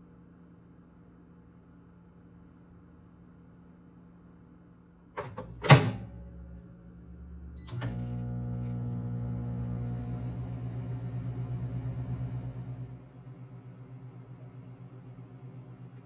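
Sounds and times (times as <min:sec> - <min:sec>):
door shutting clunk: 0:05.2 - 0:06.5
appliance motor humming: 0:05.2 - 0:16.0
brief beep: 0:07.6 - 0:07.9.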